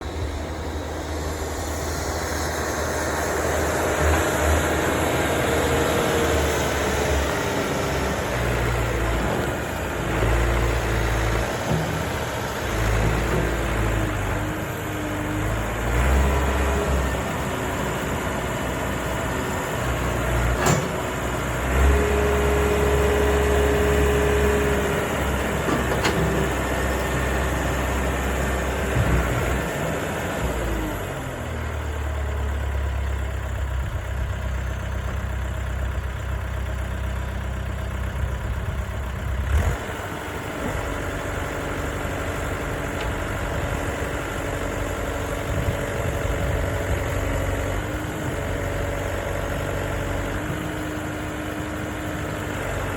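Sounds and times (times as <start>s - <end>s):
steady whine: 0.0s - 8.2s
diesel engine running: 0.0s - 52.9s.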